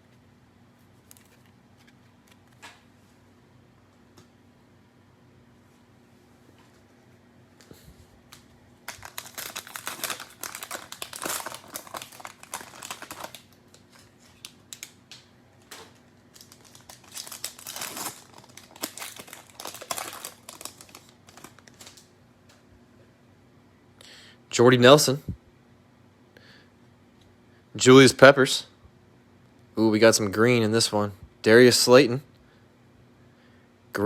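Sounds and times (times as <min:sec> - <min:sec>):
plastic wrapper crinkling: 0:08.3 - 0:22.1.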